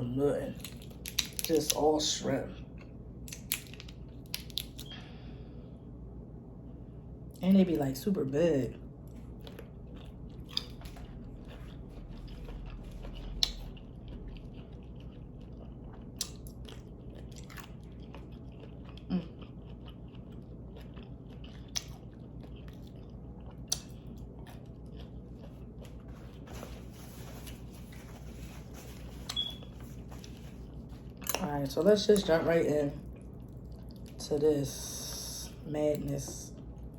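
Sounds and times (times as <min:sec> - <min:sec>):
steady low hum: 0:00.0 - 0:36.9
biting and chewing: 0:00.5 - 0:01.8, 0:09.0 - 0:31.5.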